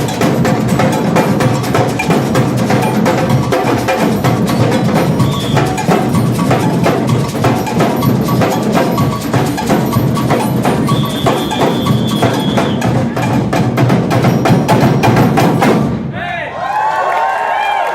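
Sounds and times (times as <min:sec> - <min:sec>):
samba drum section playing: 0:00.0 - 0:16.2
high steady tone: 0:02.6 - 0:13.2.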